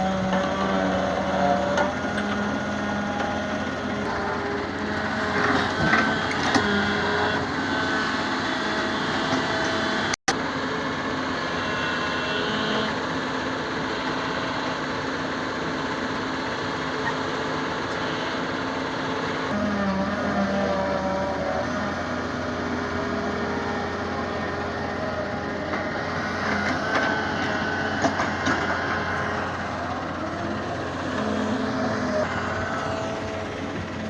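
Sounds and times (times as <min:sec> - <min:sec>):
heavy machine engine running: 0:00.0 - 0:34.0.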